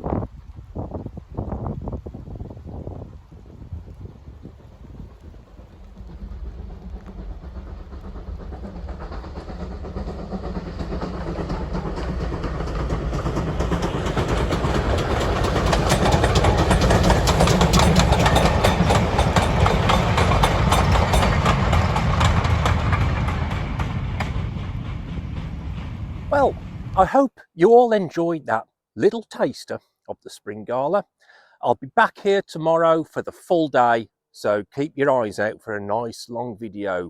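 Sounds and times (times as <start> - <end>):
steam train rumbling: 0.0 - 33.6
train wheels clicking on rails: 4.6 - 27.2.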